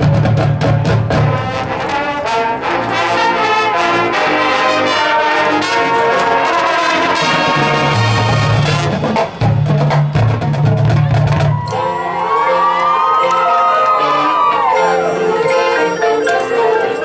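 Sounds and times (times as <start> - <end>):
drum strokes: 0.0 - 4.2, 5.9 - 12.4
brass section playing chords: 0.0 - 11.0, 11.6 - 17.0.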